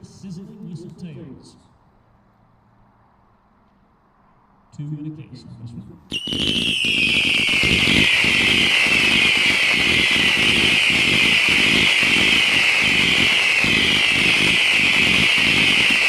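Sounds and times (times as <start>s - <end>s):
firework whistles: 6.1s - 16.0s.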